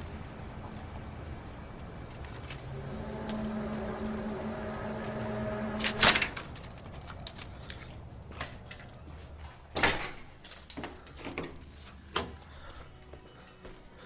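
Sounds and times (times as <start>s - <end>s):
handling clicks and rattles: 5.8s - 9.1s.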